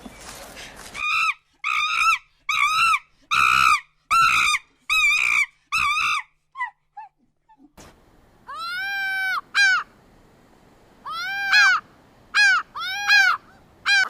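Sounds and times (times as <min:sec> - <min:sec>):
animal giving shrill calls: 0:11.1 - 0:14.0.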